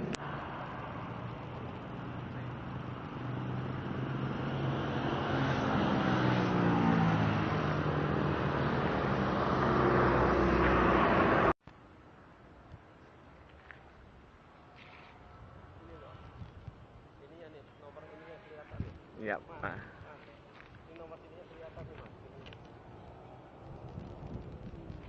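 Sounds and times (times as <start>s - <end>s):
vehicle engine speeding up: 0.0s - 11.6s
road noise: 0.0s - 25.0s.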